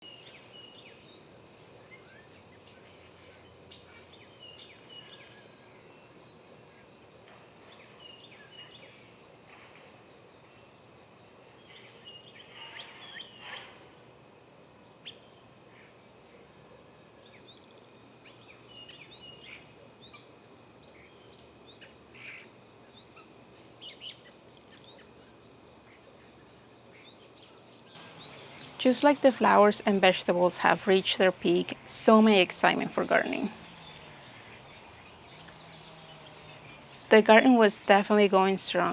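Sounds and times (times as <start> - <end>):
insects trilling: 0.1 - 38.9
bird chirps: 28.0 - 38.9.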